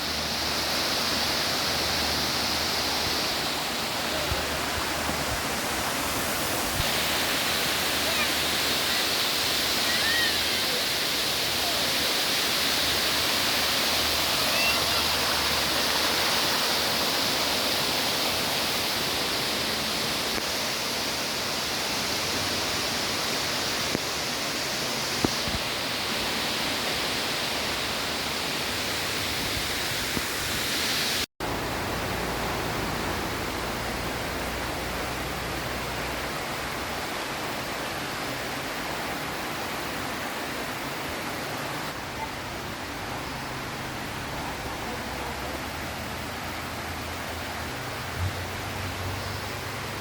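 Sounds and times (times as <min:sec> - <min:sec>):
waterfall rushing and splashing: 0:00.0 - 0:50.0.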